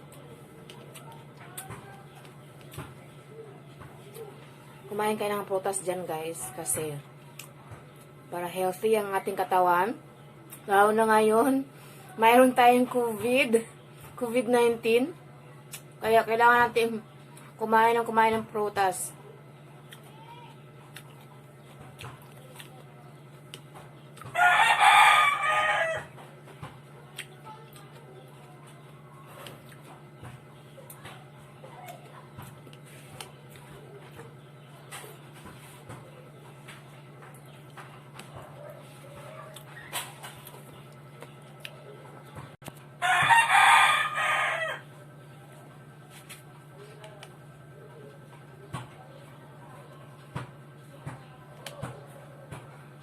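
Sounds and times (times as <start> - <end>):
steady low hum: 0.0 - 53.0
rooster crowing: 24.3 - 26.2, 43.0 - 45.0.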